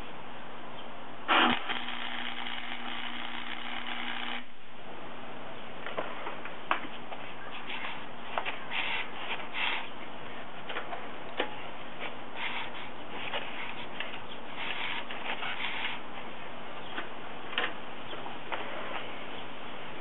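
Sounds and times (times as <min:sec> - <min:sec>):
arc welding crackling hiss: 0:01.3 - 0:04.5.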